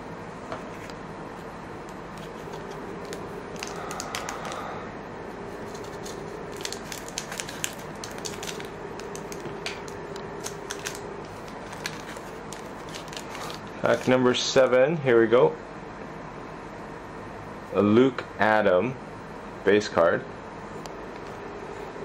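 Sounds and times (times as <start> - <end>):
wrapper tearing and crinkling: 5.7 - 14.1.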